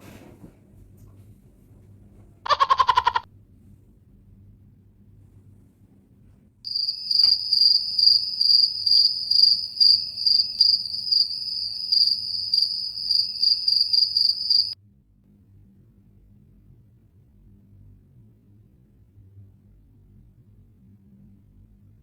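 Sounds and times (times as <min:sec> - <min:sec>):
cricket chirping: 0:06.7 - 0:14.8.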